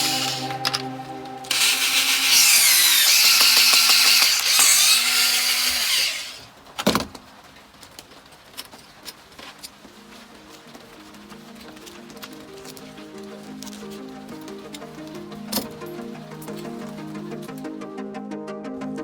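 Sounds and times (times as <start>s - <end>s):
hand-held power tool running: 0.0s - 0.8s, 1.5s - 6.5s.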